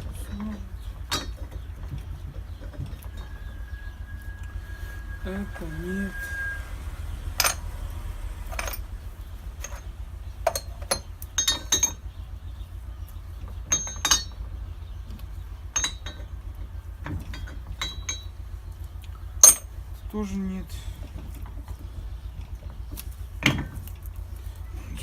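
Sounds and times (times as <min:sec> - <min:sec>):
metal hand tools clinking: 0:08.5 - 0:08.9, 0:10.5 - 0:12.0, 0:13.7 - 0:14.4, 0:15.8 - 0:16.3, 0:17.3 - 0:18.3, 0:19.4 - 0:19.7.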